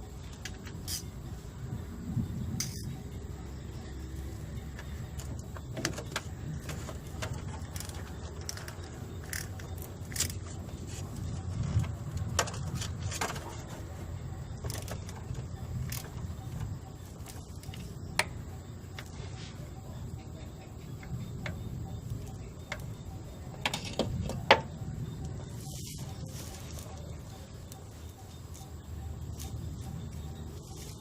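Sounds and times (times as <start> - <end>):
steady low rumble: 0.0 - 31.0
tools and metal parts clinking: 2.5 - 3.1, 4.3 - 18.2.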